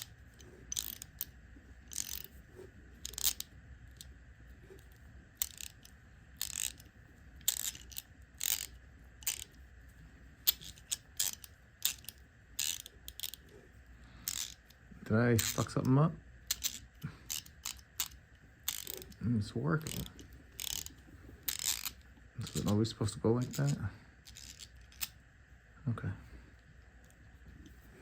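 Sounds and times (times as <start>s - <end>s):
hand ratchet clicking: 0.7s - 1.3s, 1.9s - 2.3s, 3.0s - 4.1s, 5.4s - 9.5s, 10.4s - 13.4s, 14.2s - 14.7s, 16.5s - 19.2s, 19.8s - 20.9s, 21.5s - 22.7s.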